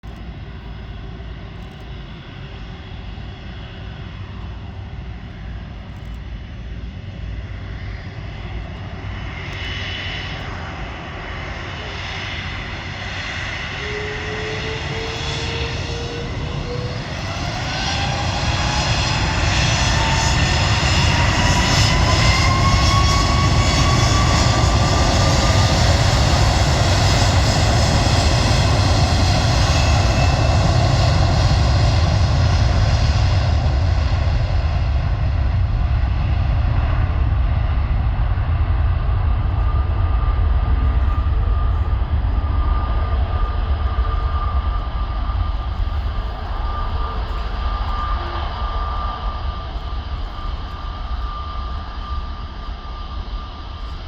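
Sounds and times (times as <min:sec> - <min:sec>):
jet engines spooling up: 0:07.7 - 0:54.0.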